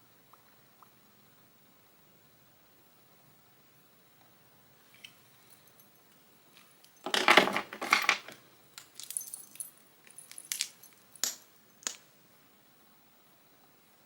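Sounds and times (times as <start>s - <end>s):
small hard objects clattering: 6.6s - 12.0s.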